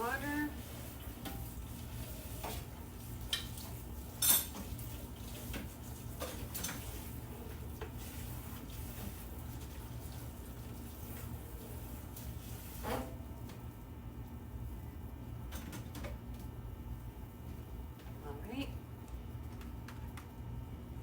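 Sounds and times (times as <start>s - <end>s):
dishes and utensils clattering: 4.2s - 4.8s, 6.2s - 7.0s.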